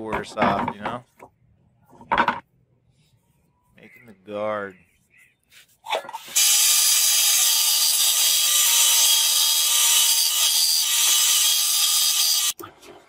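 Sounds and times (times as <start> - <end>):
power tool grinding steel: 6.2 - 12.6.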